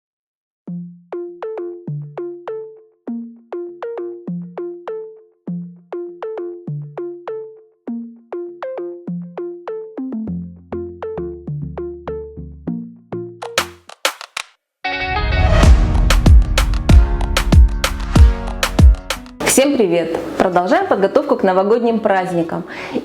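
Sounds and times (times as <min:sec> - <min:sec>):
plucked synthesizer melody: 0:00.7 - 0:13.7, 0:14.9 - 0:19.4
bass line: 0:14.9 - 0:19.4.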